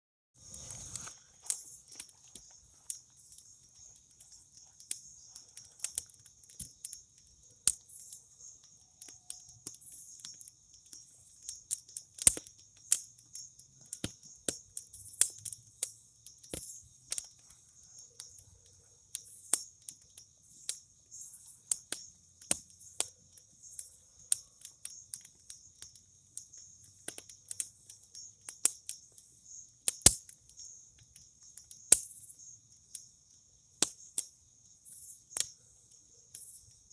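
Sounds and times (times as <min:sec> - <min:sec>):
campfire crackling and popping: 0:00.4 - 0:36.9
crickets chirring: 0:00.4 - 0:36.9.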